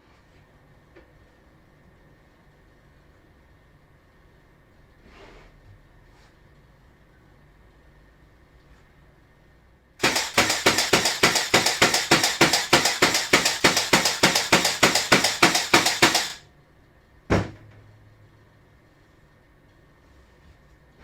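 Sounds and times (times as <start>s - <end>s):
rapid sharp knocks: 10.0s - 16.4s.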